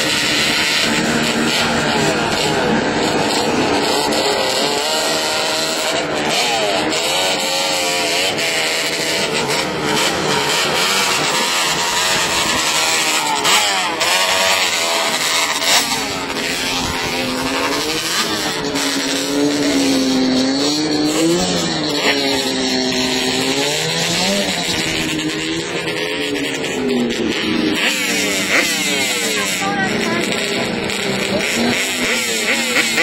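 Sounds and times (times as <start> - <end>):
atv engines revving: 0.0 - 33.0
steady rushing noise: 9.2 - 25.9.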